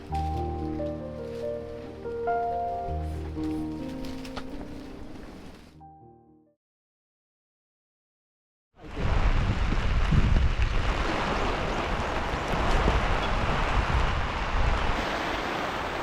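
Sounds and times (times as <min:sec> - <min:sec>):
wind buffeting microphone: 0:08.9 - 0:15.2.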